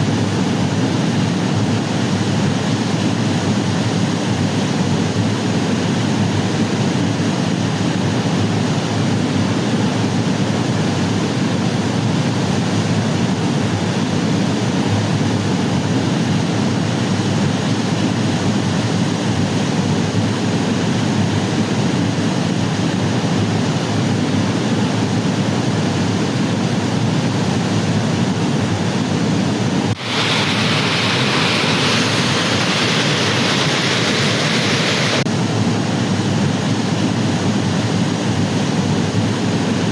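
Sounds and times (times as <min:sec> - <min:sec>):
waterfall roaring: 0:20.4 - 0:39.9.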